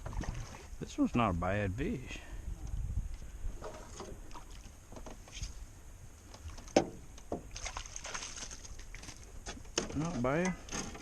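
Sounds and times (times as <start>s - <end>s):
knocks and clicks in boat: 3.6s - 5.5s, 6.2s - 11.0s.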